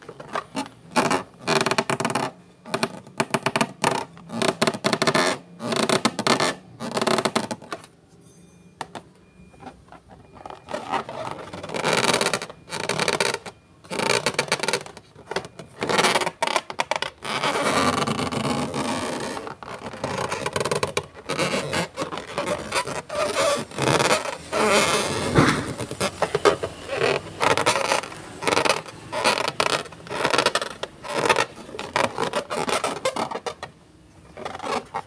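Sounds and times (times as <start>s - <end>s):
scraping and rubbing slime: 10.0s - 35.0s.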